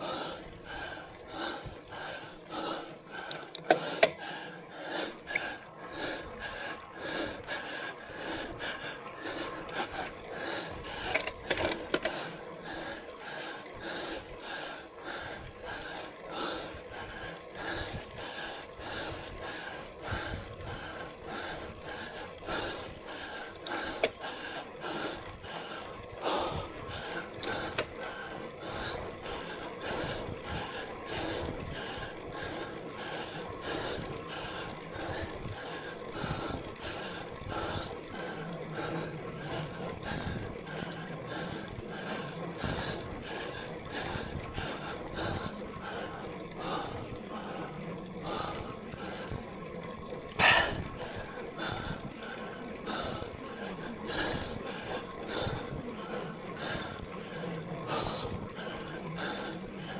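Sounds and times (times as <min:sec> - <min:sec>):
bicycle drivetrain noise: 0:00.0 - 0:59.9
cyclist breathing hard: 0:00.0 - 0:59.9.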